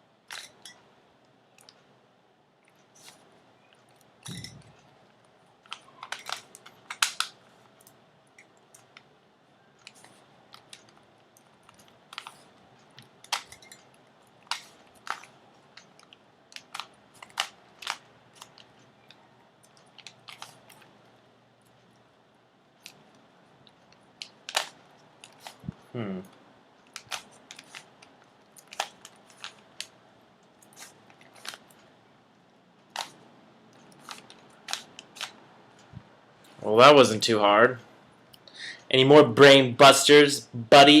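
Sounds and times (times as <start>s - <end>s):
plastic cube clacking: 14.4s - 20.9s, 26.9s - 29.9s.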